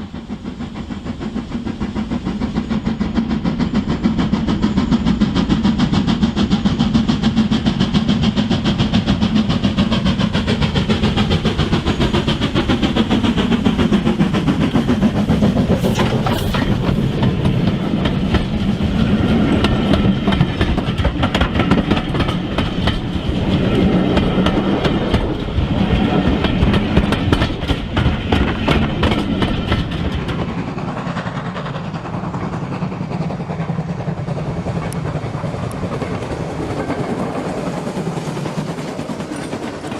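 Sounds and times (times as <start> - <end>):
wheels clicking over track: 11.2 - 31.3.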